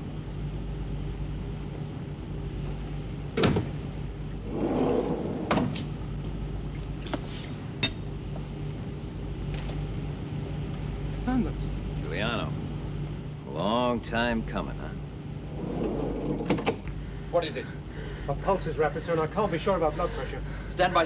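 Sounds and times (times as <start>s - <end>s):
low machinery hum: 0.0s - 21.0s.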